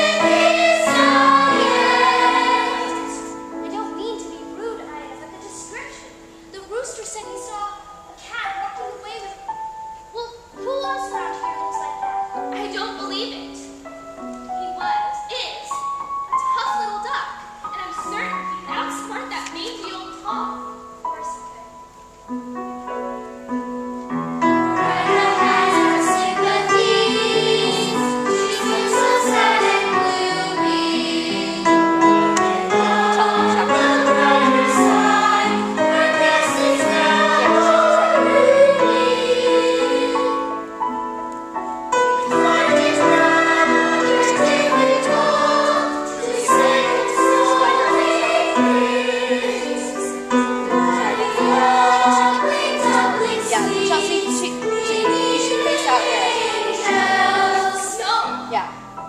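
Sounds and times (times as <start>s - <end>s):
choir singing an elegy: 0.0s - 3.6s, 24.4s - 41.0s, 41.9s - 58.3s
musical accompaniment: 0.0s - 59.0s.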